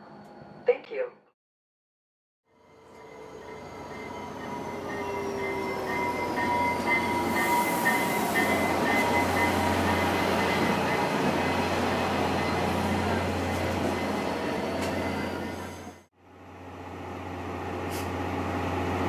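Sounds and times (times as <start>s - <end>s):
locomotive bell ringing: 2.5s - 15.7s
train engine drone: 2.5s - 19.0s
high wheel squeal: 2.6s - 16.0s.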